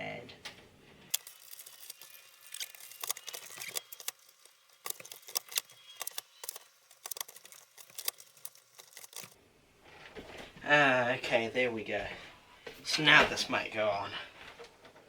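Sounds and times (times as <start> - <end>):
cables and plastic parts clicking: 0.4 - 10.6.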